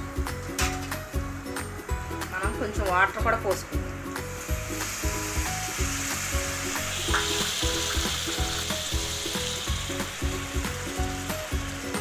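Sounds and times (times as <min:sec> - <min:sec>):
curry sizzling in pan: 0:00.0 - 0:12.0
water poured into pan: 0:04.4 - 0:11.4.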